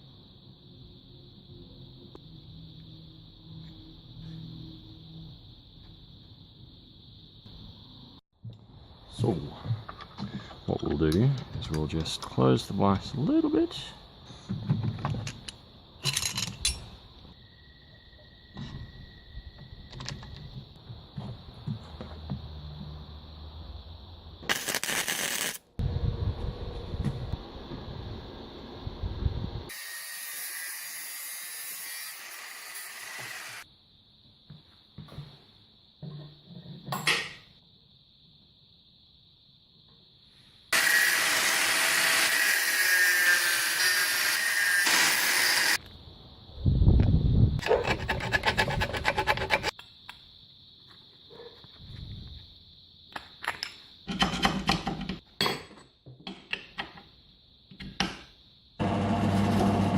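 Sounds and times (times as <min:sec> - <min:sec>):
sawing or rasping metal: 0:47.6 - 0:49.7.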